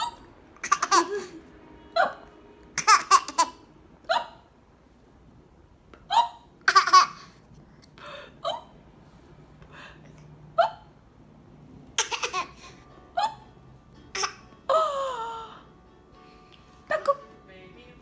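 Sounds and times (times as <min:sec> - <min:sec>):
child laughing: 0:00.0 - 0:02.2, 0:12.0 - 0:13.4.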